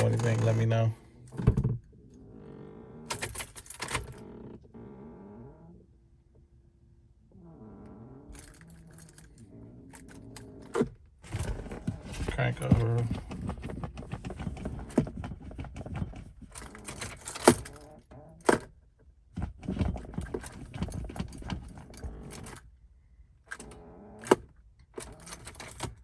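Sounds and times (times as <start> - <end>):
keys clicking and jangling: 3.1 - 4.2, 16.5 - 17.9.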